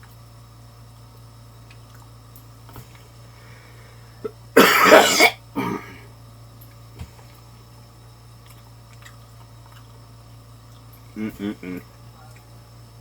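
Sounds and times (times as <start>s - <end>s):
throat clearing: 4.2s - 6.0s, 11.2s - 11.9s
person coughing: 4.6s - 6.0s, 11.2s - 11.8s.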